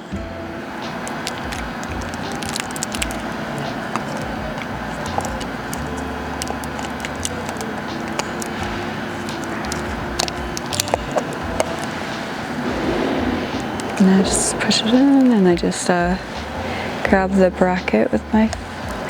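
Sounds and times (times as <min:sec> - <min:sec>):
steady background noise: 0:00.0 - 0:19.0
plastic parts rustling: 0:01.0 - 0:12.0
small plastic clicks: 0:09.2 - 0:11.9.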